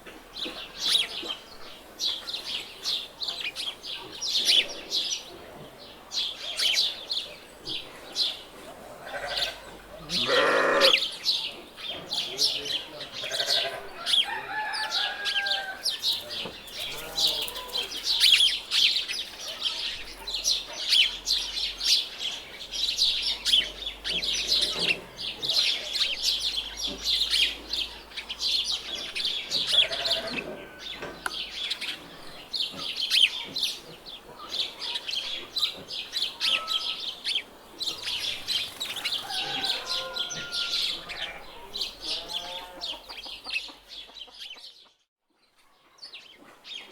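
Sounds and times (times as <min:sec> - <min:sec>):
small birds chirping: 0:00.0 - 0:46.9
chickens clucking: 0:22.3 - 0:45.0.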